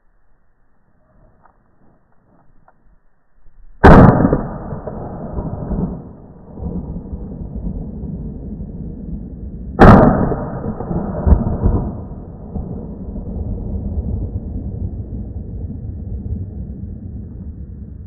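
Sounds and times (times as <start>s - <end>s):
shotgun shots with echo: 3.8s - 6.4s, 9.8s - 12.3s.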